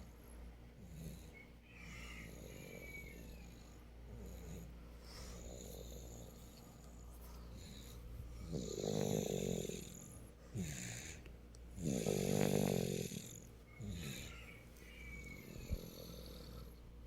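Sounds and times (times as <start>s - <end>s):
soft breath: 1.3s - 8.5s
loud snoring: 7.6s - 14.5s, 15.4s - 16.8s.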